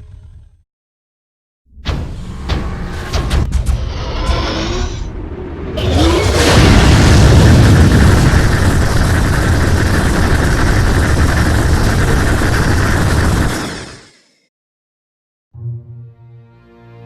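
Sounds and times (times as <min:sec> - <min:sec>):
rumbling hissing blast: 0:04.6 - 0:14.1.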